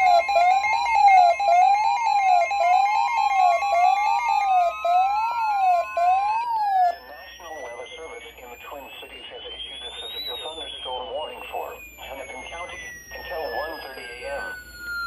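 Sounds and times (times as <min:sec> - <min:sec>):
tone climbing in pitch: 0:00.0 - 0:08.6
steady electronic tone: 0:00.0 - 0:15.0
sweeping alarm tone: 0:00.0 - 0:15.0.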